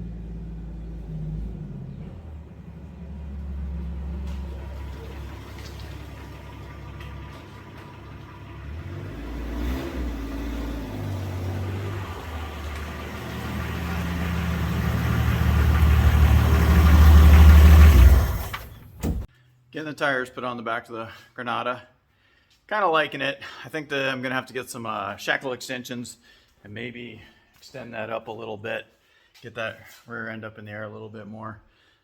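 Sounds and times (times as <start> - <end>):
car engine running: 0.0 - 19.2.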